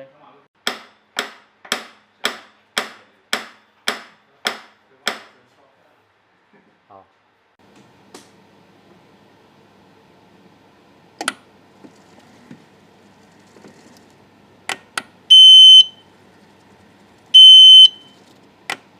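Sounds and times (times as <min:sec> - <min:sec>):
short high beeps: 0:15.3 - 0:15.9, 0:17.4 - 0:18.1.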